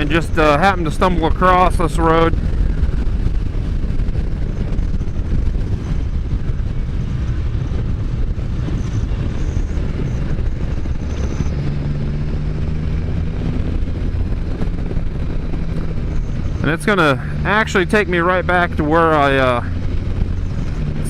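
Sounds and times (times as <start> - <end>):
engine humming: 0.0 - 21.0
wind buffeting microphone: 0.0 - 21.0.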